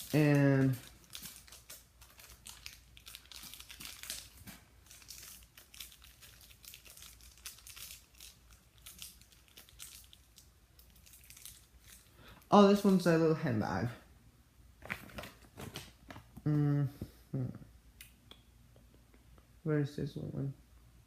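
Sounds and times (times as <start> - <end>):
plastic packaging crinkling: 0.0 - 13.0, 14.8 - 16.3.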